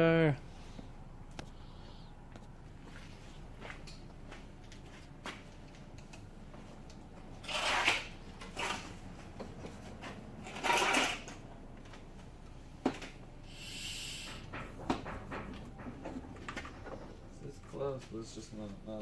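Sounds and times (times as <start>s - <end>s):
hissing rushes of air: 13.5s - 14.5s
thin high hiss: 13.5s - 14.5s.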